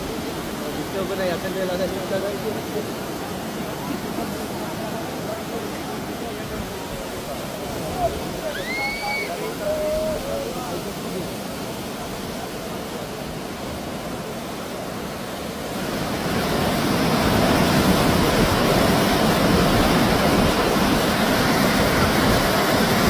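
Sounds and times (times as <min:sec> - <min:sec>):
floodwater rushing: 0:00.0 - 0:23.0.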